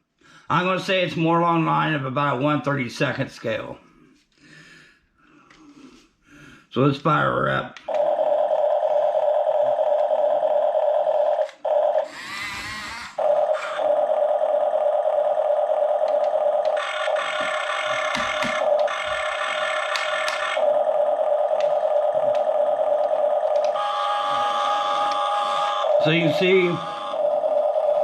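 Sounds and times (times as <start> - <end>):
toy electric motor whine: 7.9 - 28.0.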